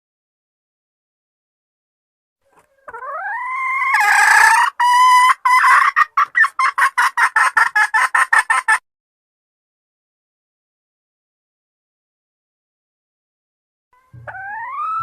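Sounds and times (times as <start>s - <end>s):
hen calling and clucking: 2.4s - 8.8s, 14.0s - 15.0s.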